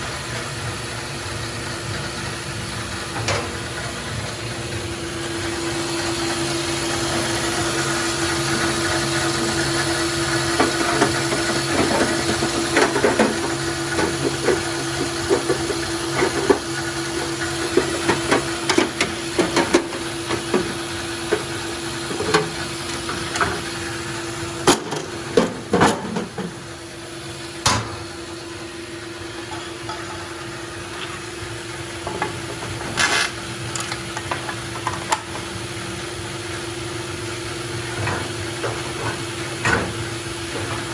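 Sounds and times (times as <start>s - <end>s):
band saw motor hum: 2.5s - 25.8s.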